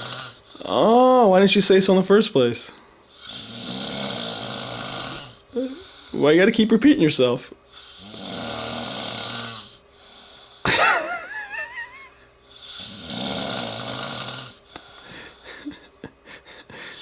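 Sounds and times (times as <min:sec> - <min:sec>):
loud snort with whistling wheeze: 0:00.0 - 0:00.5, 0:03.2 - 0:06.2, 0:07.8 - 0:10.6, 0:12.5 - 0:15.4
man snoring loudly: 0:00.0 - 0:01.0, 0:03.2 - 0:05.9, 0:07.8 - 0:09.8, 0:12.5 - 0:15.4.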